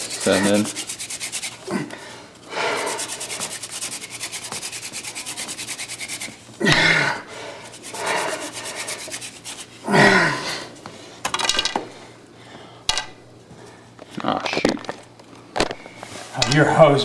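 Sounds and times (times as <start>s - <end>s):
spindle rubbing in hearth board: 0.0s - 9.9s
strained breaths or grunts: 1.6s - 3.4s, 6.6s - 9.1s, 9.8s - 10.8s.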